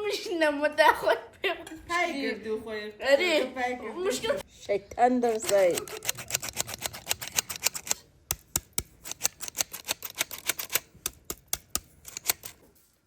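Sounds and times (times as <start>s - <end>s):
sharp clicks and taps: 4.9s - 12.6s.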